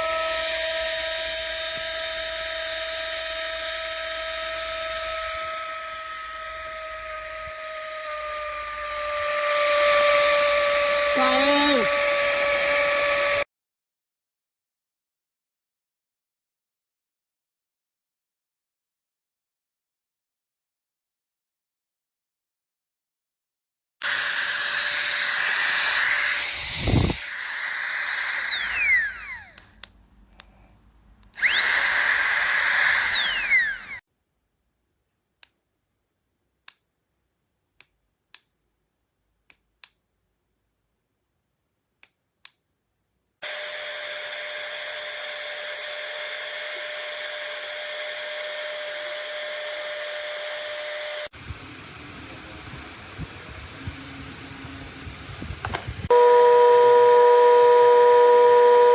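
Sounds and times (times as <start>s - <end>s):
electric air pump whining: 0.0s - 13.5s, 24.0s - 29.9s, 31.4s - 34.0s, 43.4s - 58.9s.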